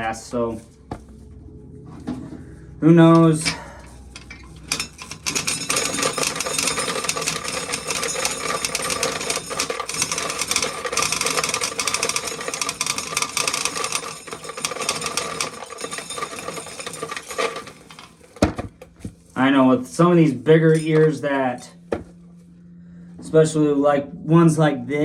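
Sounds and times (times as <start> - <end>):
corn kernels rattling into bucket: 4.4 - 18.4.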